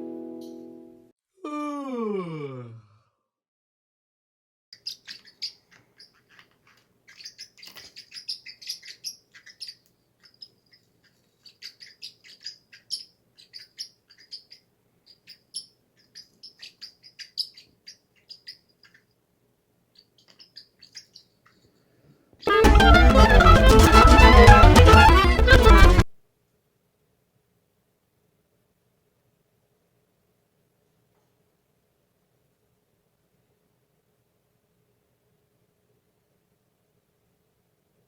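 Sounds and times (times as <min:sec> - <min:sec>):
parrots chirping: 0:04.8 - 0:19.2, 0:20.0 - 0:21.6, 0:22.4 - 0:26.0
loud music: 0:22.5 - 0:26.1.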